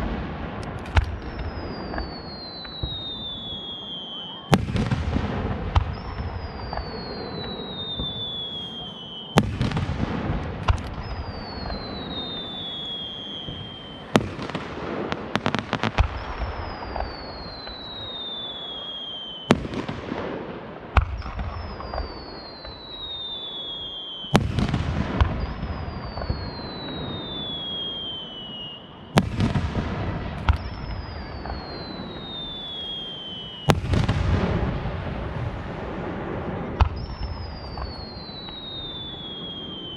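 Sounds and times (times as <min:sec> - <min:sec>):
small firework pops: 0:00.0 - 0:39.9
high falling whistle: 0:01.2 - 0:04.6, 0:05.9 - 0:09.6, 0:10.9 - 0:14.2, 0:16.0 - 0:19.6, 0:21.6 - 0:24.4, 0:25.4 - 0:29.0, 0:30.5 - 0:34.1, 0:36.7 - 0:39.9.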